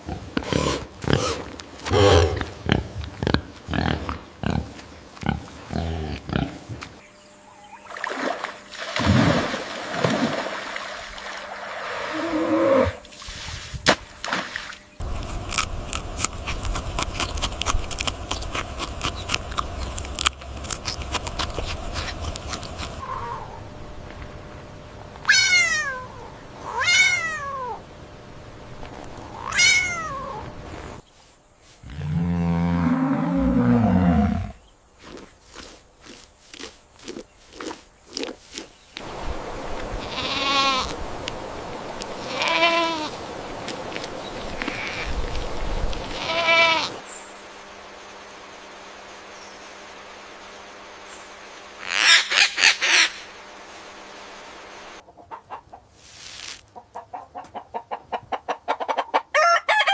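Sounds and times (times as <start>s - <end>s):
animal sounds: 0.0s - 7.8s, 16.2s - 23.8s, 25.2s - 27.8s, 29.2s - 31.0s, 43.9s - 47.0s
cat meowing: 25.2s - 27.8s, 29.4s - 30.4s.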